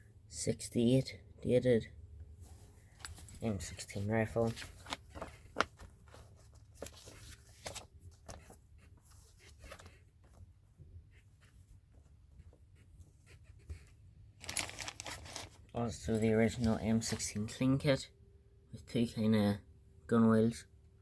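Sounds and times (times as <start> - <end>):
soft rustling: 2.2 - 17.5.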